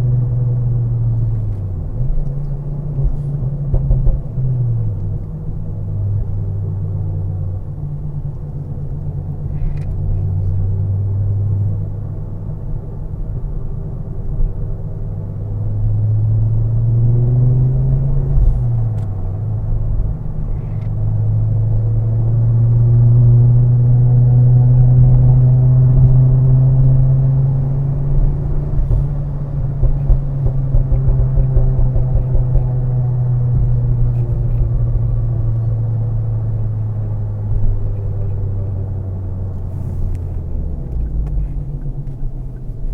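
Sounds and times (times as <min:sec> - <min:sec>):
turbocharged car engine: 0:00.0 - 0:42.9.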